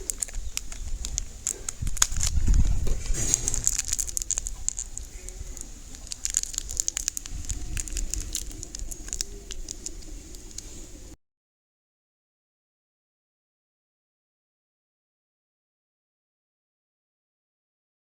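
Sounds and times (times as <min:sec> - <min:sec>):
slime crackling and popping: 0:00.0 - 0:10.7
thump: 0:02.8 - 0:03.7.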